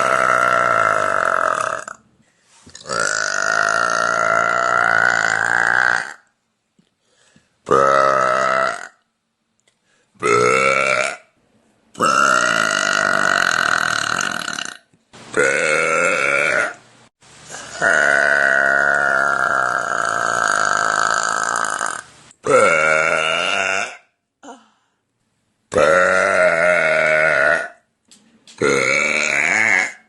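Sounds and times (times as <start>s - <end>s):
woman burping: 0.0s - 2.0s, 2.8s - 6.3s, 12.0s - 14.8s, 17.5s - 24.6s, 25.7s - 27.8s, 28.6s - 30.0s.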